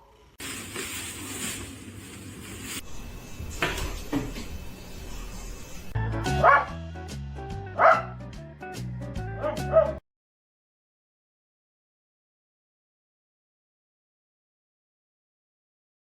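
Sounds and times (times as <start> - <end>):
music with bass line and beat: 6.0 - 10.0
dog barking: 6.4 - 6.8, 7.8 - 8.2, 9.4 - 10.0.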